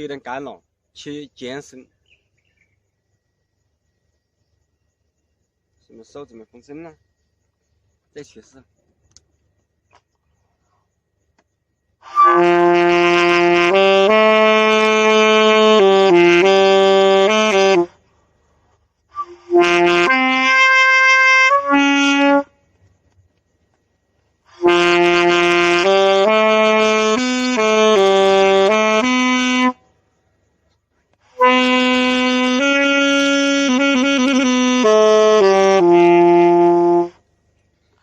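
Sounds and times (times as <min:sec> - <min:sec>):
saxophone playing slow notes: 0:12.0 - 0:18.0, 0:19.1 - 0:22.5, 0:24.5 - 0:29.8, 0:31.3 - 0:37.2.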